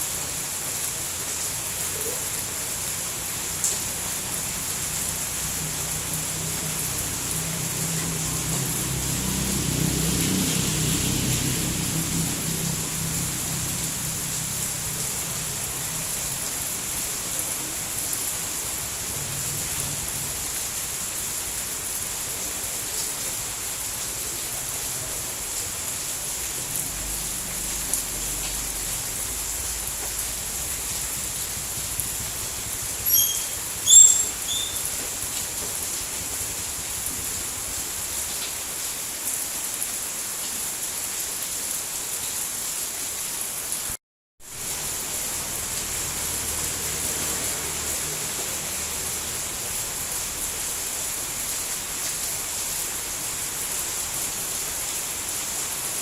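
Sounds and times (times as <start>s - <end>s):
steady rain falling: 0.0s - 56.0s
high chirps: 33.0s - 34.9s.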